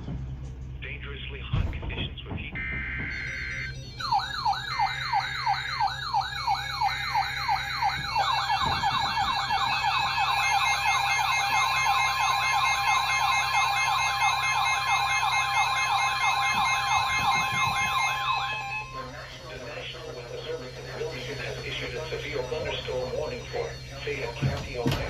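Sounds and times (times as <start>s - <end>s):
electronic siren yelping: 2.6s - 25.0s
steady siren tone: 2.6s - 25.0s.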